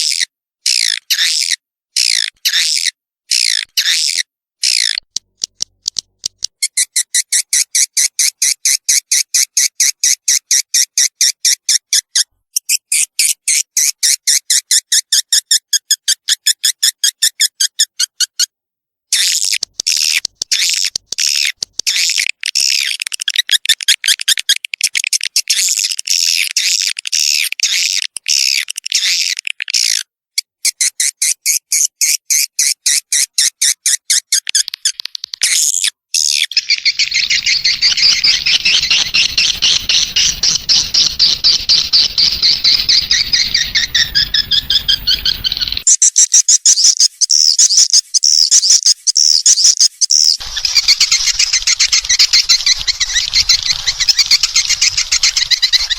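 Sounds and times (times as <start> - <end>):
swiftlet chirps and twitters: 19.2 - 23.0, 36.2 - 55.9.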